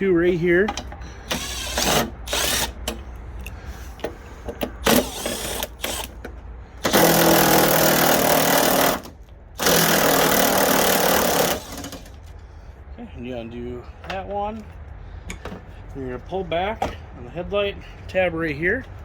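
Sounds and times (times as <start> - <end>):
cordless power tool spinning bolts: 1.3 - 3.0, 4.8 - 6.2, 6.8 - 12.2.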